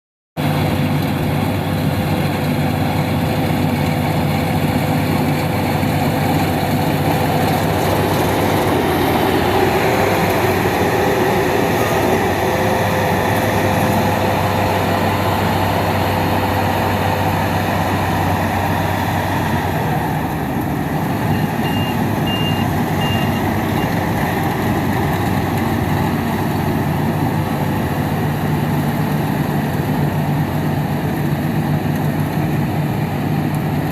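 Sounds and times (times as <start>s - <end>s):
combine harvester drone: 0.4s - 33.9s
high beeps: 21.3s - 24.0s.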